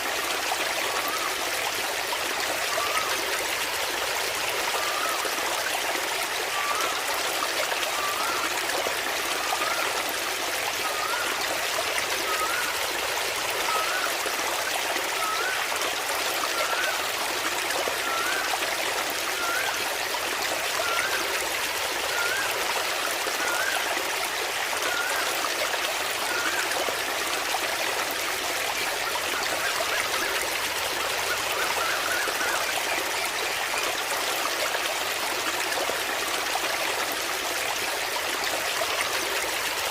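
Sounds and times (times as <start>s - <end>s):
small waterfall splashing: 0.0s - 39.9s.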